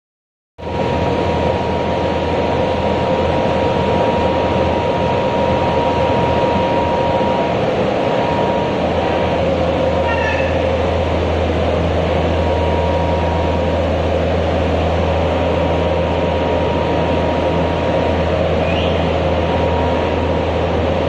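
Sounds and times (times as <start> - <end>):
glass washing machine running: 0.6 - 21.0
low hum: 0.6 - 21.0
thin constant whine: 0.6 - 21.0.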